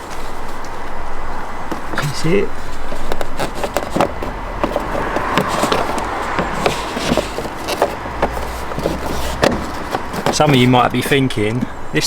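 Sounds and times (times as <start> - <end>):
light clicks and knocks: 1.7 - 11.7.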